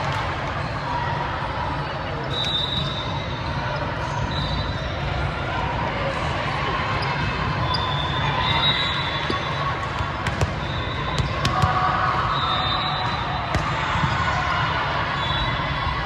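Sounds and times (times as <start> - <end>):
crowd chatter: 0.0 - 16.0
ball bouncing: 10.0 - 11.8.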